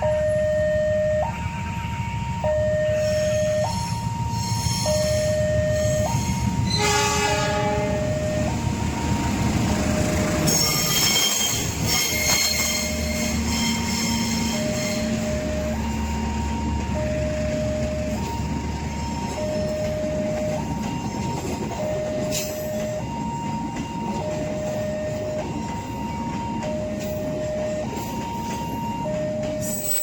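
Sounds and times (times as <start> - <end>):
train rumbling: 0.0 - 30.0
two-tone crossing alarm: 0.0 - 30.0
train horn: 5.9 - 8.4
wheel squeal: 10.4 - 15.5.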